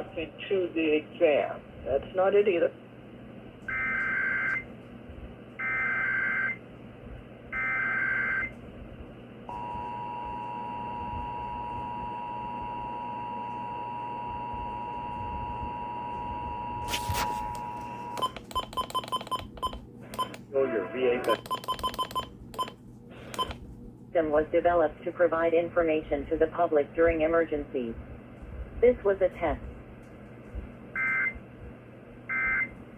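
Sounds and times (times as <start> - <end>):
radio static hiss: 16.8 - 18.0.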